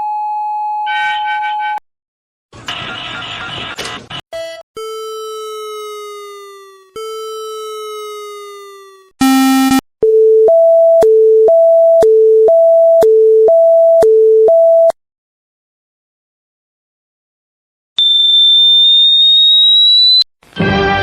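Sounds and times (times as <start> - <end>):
two-tone hi-lo alarm: 9.2 - 9.8, 18.0 - 20.2.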